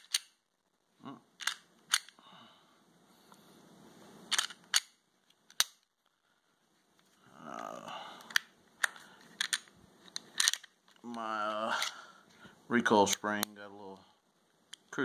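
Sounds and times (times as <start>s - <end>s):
sharp metal clicks: 1.4s - 2.2s.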